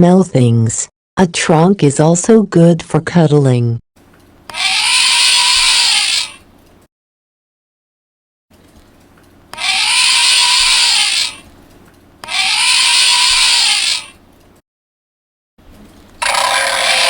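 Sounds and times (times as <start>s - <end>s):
recorded elephant trumpet from speaker: 9.6s - 11.4s, 16.2s - 17.0s.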